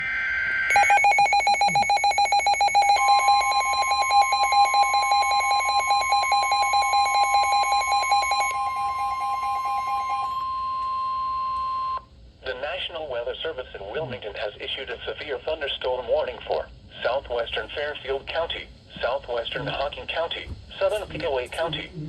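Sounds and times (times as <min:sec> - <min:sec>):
steady warning alarm tone: 0:00.0 - 0:12.0
rapidly pulsing alarm beep: 0:00.4 - 0:12.0.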